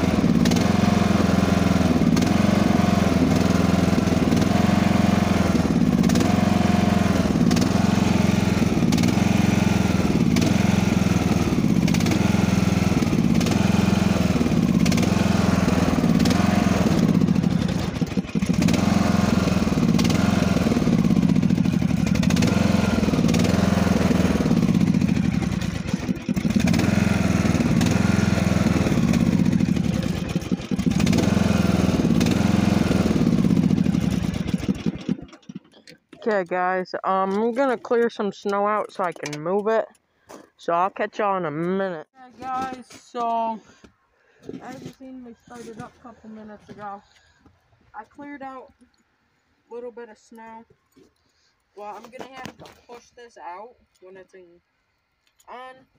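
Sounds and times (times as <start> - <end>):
riding lawn mower engine running: 0.0 - 41.8.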